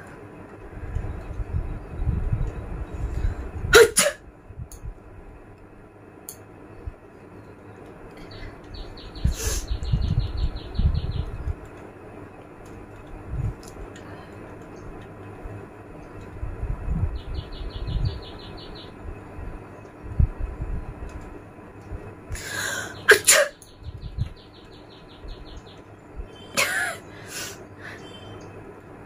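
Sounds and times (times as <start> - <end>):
woman sneezing: 3.8 - 4.2.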